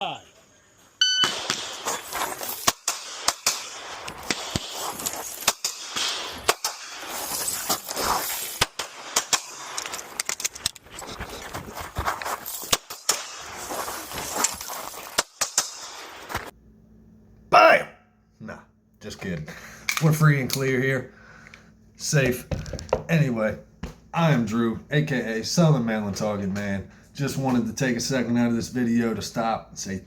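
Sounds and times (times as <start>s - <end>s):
pistol shots: 1.2s - 7.2s.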